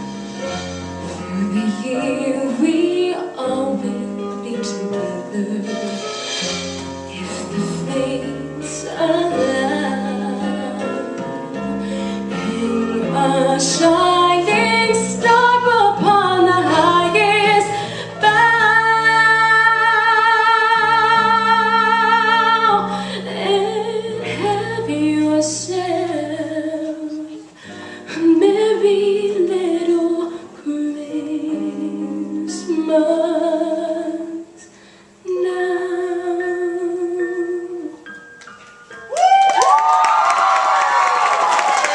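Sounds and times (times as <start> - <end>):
instrumental backing: 0.0 - 41.9
women singing in harmony: 7.1 - 11.2, 12.4 - 27.4.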